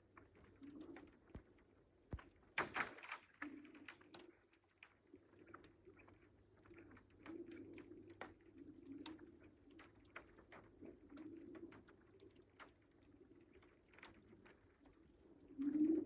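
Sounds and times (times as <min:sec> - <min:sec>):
lake ice low hollow moans: 0:03.4 - 0:16.0.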